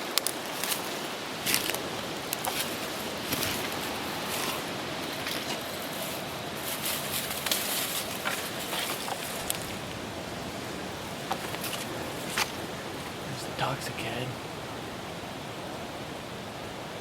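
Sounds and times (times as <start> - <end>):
twigs snapping: 0.0 - 10.1, 11.1 - 13.2
outdoor hiss: 0.0 - 17.0
footsteps through dry leaves: 0.3 - 13.2.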